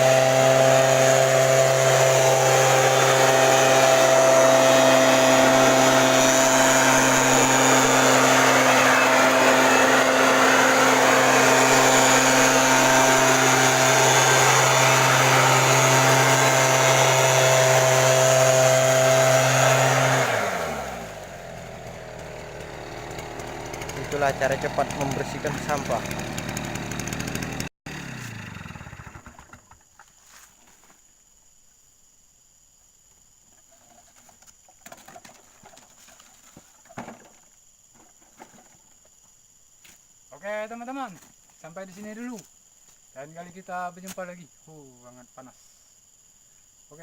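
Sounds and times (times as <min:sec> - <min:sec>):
two-stroke engine running: 0:00.0 - 0:29.7.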